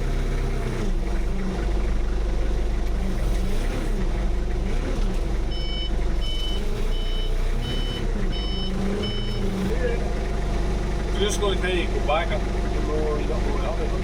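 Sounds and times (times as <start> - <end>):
vehicle engine running: 0.0 - 14.0
reversing alarm beeps: 5.5 - 9.7.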